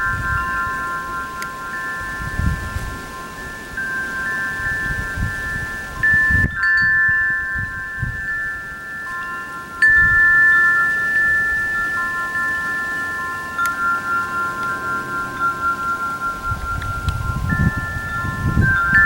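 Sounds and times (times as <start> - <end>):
wind chimes ringing: 0.0 - 19.0.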